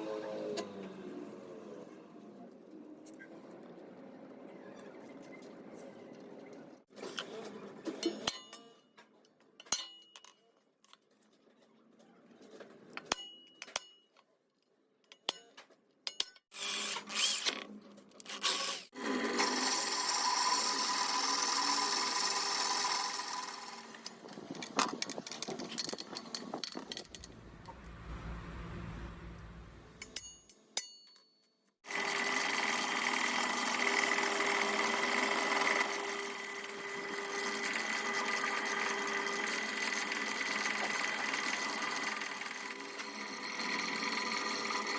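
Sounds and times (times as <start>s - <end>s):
metal parts and tools clicking: 7.9s - 18.9s, 24.0s - 27.8s
power tool running: 19.0s - 24.3s, 31.9s - 44.9s.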